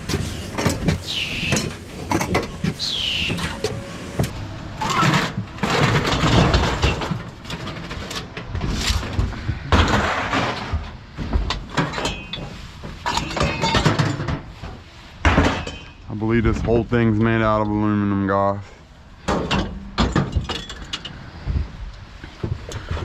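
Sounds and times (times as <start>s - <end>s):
scrap metal clanking: 0.0s - 16.1s.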